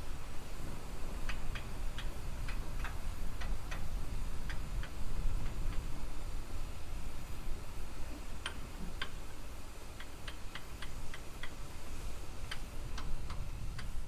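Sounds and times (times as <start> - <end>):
sharp clicks from railway track: 1.2 - 5.9, 8.4 - 9.2, 9.9 - 14.0.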